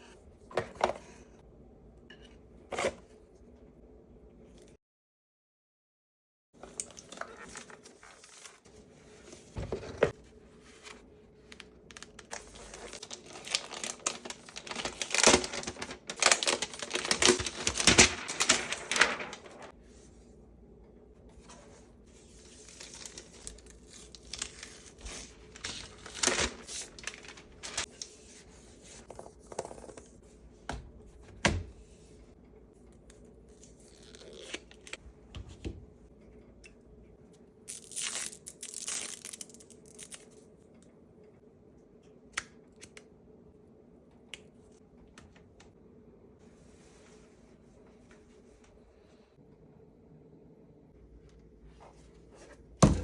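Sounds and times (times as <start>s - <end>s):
plastic and paper crinkling: 11.8s - 19.8s, 21.6s - 29.1s.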